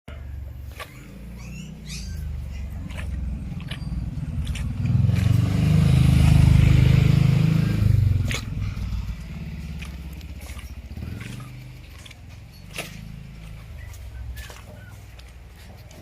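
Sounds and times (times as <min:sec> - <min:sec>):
small engine running: 0:00.5 - 0:14.9.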